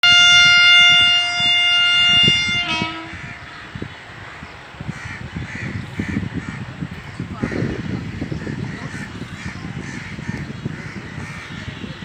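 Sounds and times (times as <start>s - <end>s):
locomotive horn blast: 0.0s - 3.7s
train rumbling and knocking: 0.0s - 12.0s.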